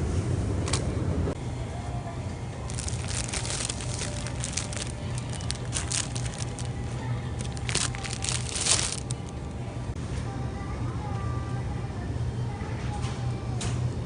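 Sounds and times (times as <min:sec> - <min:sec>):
steady low hum: 0:00.0 - 0:14.0
packaging crinkling and rustling: 0:02.7 - 0:09.3.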